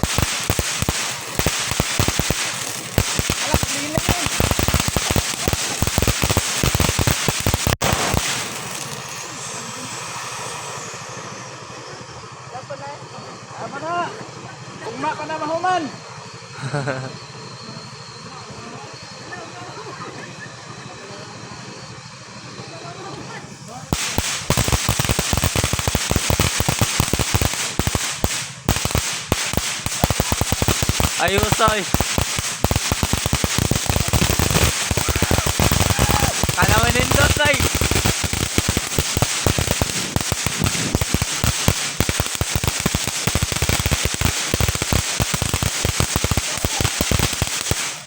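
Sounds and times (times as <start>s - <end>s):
firework fountain crackling: 0.0s - 48.0s
firework fountain hissing: 0.0s - 48.0s.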